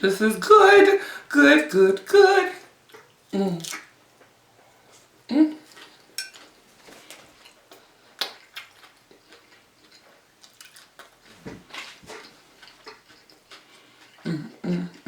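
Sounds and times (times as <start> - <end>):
chewing: 2.8 - 15.0
lip smacks: 7.1 - 9.0.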